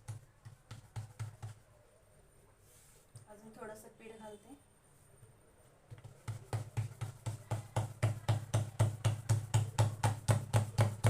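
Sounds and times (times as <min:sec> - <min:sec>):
hands patting dough: 0:00.0 - 0:01.7, 0:05.9 - 0:11.0.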